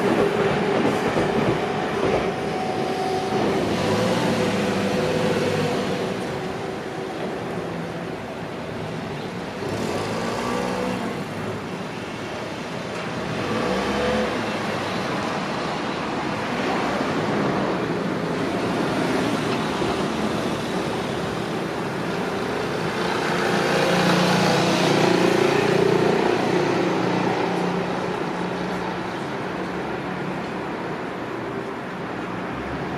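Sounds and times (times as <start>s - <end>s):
vehicles driving past: 0.0s - 32.9s.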